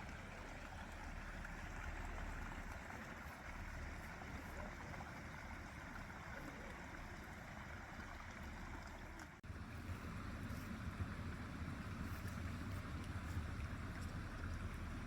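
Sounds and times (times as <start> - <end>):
shallow stream rushing: 0.0 - 15.0.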